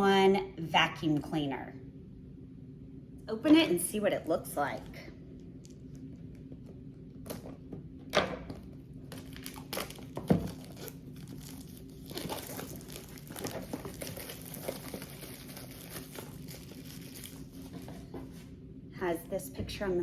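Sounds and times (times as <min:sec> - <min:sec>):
packaging crinkling and tearing: 0:08.5 - 0:18.0.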